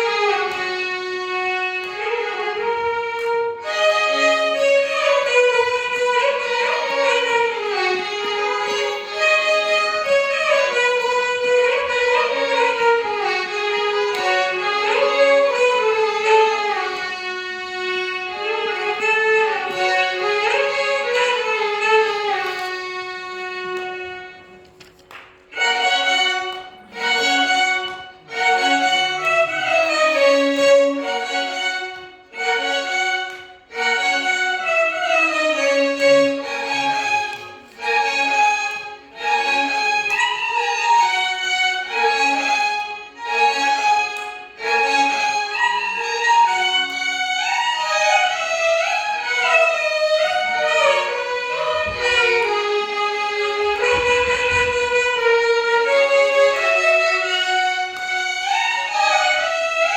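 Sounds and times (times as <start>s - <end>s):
violin ensemble melody: 0.0s - 59.9s.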